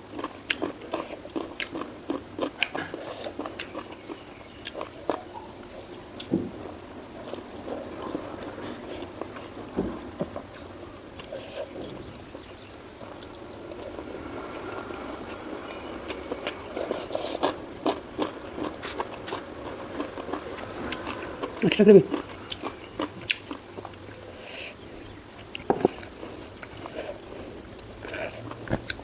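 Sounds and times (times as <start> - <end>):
chewing and biting food: 0.0 - 6.3, 14.9 - 29.0.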